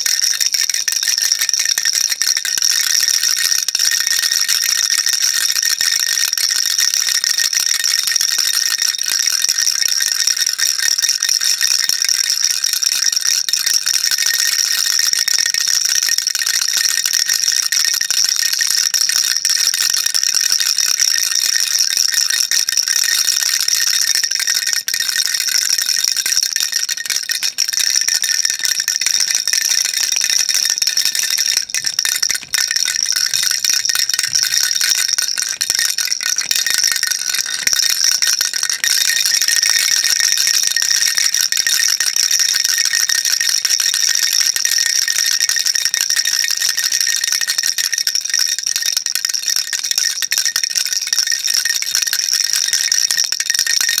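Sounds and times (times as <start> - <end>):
baby rattle shaking: 0.0 - 11.5, 19.0 - 47.6.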